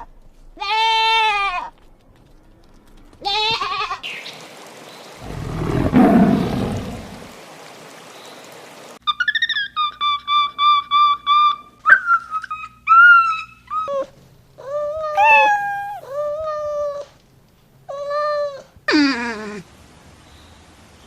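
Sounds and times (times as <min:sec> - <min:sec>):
cat meowing: 0:15.0 - 0:16.1.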